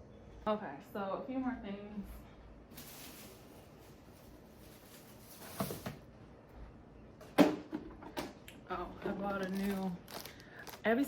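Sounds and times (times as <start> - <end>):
packaging rustling: 2.7 - 6.0, 9.4 - 11.0.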